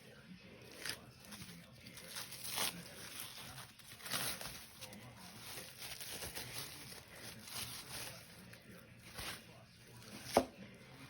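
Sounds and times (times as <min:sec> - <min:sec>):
plastic wrap crinkling: 0:00.7 - 0:10.5.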